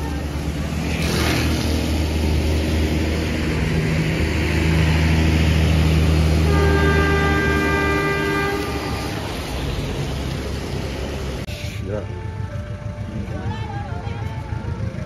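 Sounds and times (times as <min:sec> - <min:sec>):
bus diesel engine running: 0:00.0 - 0:15.0
multi-tone bus horn chord: 0:06.4 - 0:09.4.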